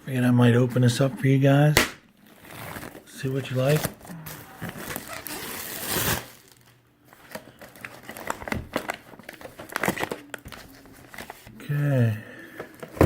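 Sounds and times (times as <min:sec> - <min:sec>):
packaging crinkling and rustling: 0:02.2 - 0:11.6.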